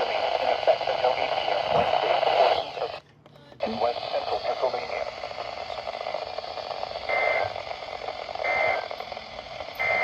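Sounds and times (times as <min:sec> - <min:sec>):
radio static: 0:00.0 - 0:03.0, 0:03.6 - 0:10.0.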